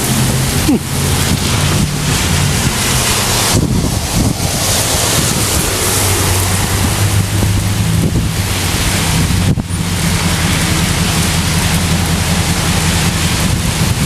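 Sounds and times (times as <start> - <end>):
gusty wind buffeting microphone: 0.0 - 14.0.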